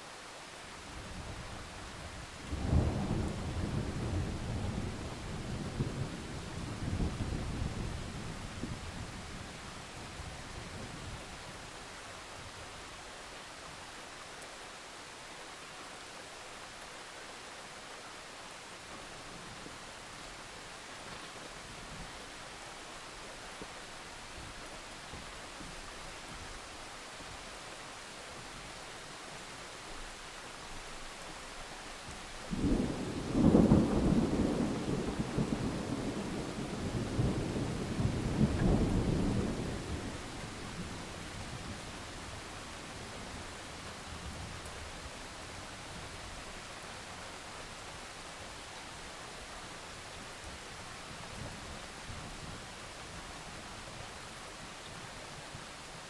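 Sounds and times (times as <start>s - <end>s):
steady rain: 0.0s - 56.0s
thunder rumbling: 32.5s - 42.9s.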